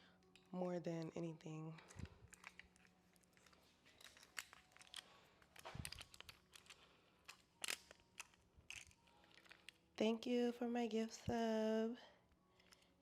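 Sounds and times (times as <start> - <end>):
small objects clicking and rustling: 1.7 - 9.9, 12.5 - 13.0.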